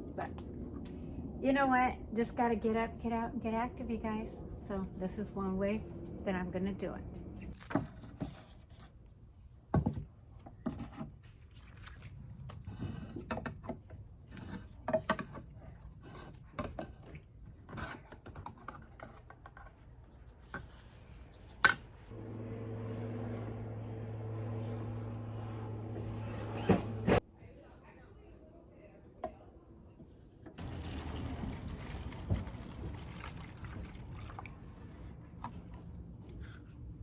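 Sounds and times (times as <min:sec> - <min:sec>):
steady low hum: 0:00.0 - 0:07.6, 0:22.0 - 0:27.2.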